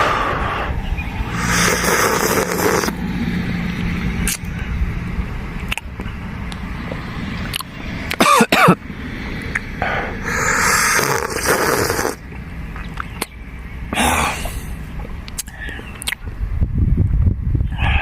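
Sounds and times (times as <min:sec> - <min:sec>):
person slurping soup: 0:01.3 - 0:03.0, 0:10.2 - 0:12.2.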